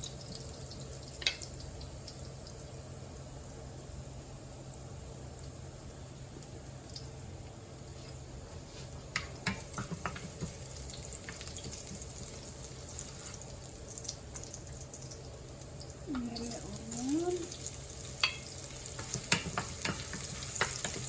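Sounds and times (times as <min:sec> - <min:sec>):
food sizzling in oil: 0:00.0 - 0:04.2, 0:05.0 - 0:21.0.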